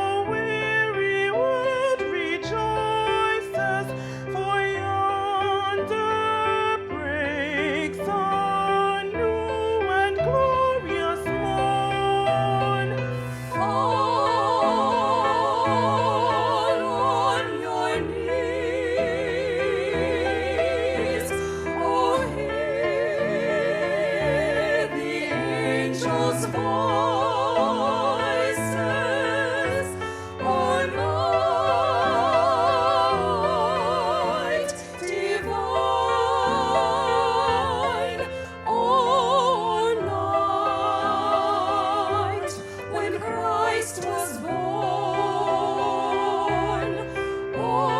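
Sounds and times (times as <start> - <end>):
classical singing with vibrato: 0.0 - 47.9.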